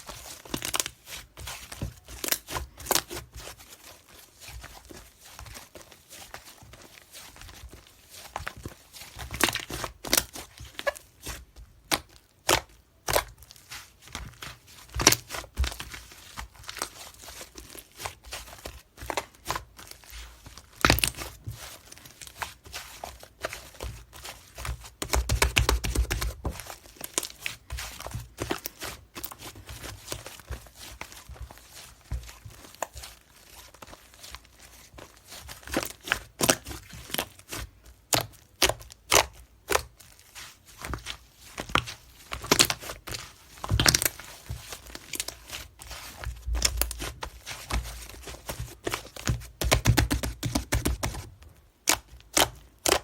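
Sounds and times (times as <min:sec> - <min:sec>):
rustling: 0:00.0 - 0:51.4
objects crinkling and clicking: 0:18.6 - 0:53.0.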